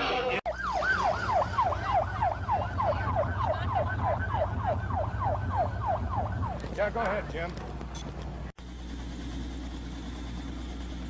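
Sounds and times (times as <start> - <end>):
emergency siren yelping: 0.5 - 6.9.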